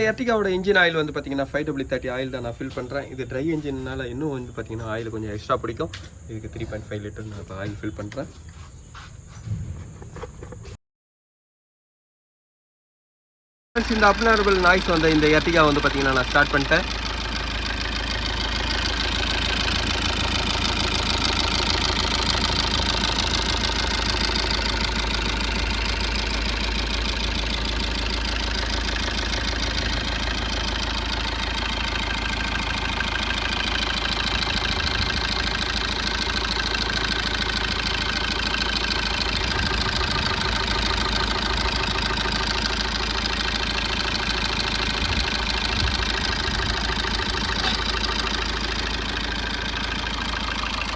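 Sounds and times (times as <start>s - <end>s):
car engine idling: 0.0s - 10.8s, 13.8s - 50.9s.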